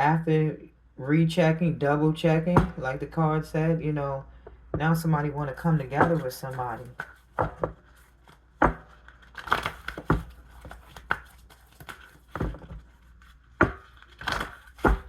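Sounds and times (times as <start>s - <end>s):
cards rustling: 5.4s - 15.0s.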